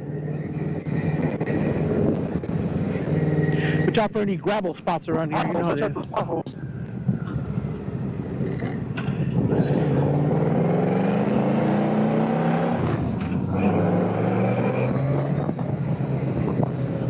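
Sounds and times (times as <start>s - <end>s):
motorcycle engine accelerating: 7.6s - 17.0s.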